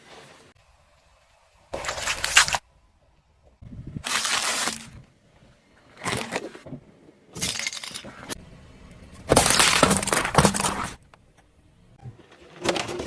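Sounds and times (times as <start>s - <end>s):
objects crunching under car tyre: 1.7s - 2.6s, 4.0s - 5.1s, 5.8s - 8.4s, 9.1s - 11.2s.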